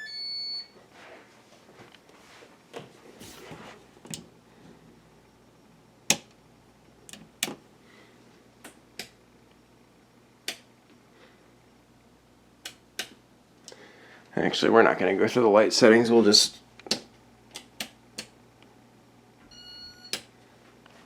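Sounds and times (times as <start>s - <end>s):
ceiling fan humming: 0.0s - 21.0s
sharp clicks: 10.4s - 10.7s, 12.6s - 13.8s.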